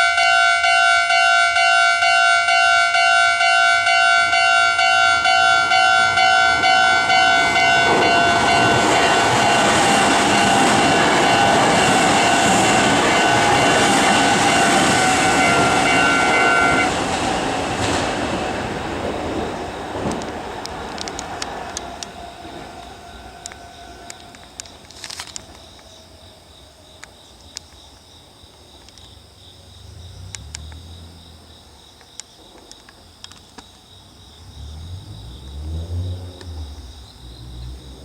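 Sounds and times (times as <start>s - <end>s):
level crossing bell ringing: 0.0s - 16.9s
electric train running: 0.0s - 27.2s.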